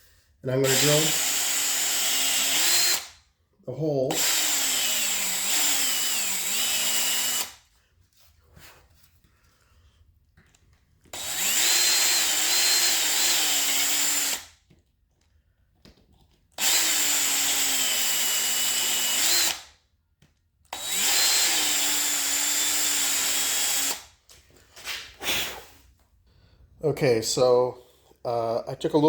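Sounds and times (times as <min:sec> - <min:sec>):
electric drill whining: 0:00.6 - 0:03.2, 0:04.1 - 0:07.6, 0:11.1 - 0:14.5, 0:16.6 - 0:19.7, 0:20.7 - 0:24.2.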